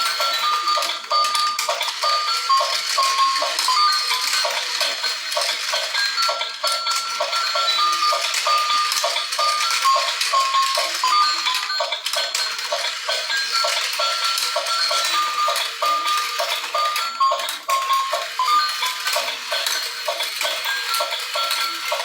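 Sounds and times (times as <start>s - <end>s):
tinny electronic beeping melody: 0.0s - 22.0s.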